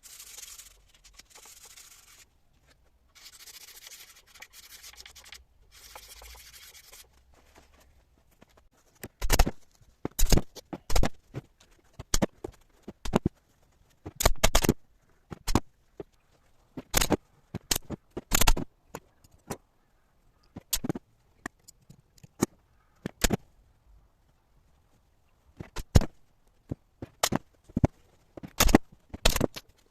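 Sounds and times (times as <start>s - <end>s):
sandpaper rubbing wood: 0.0s - 2.2s, 3.2s - 7.1s.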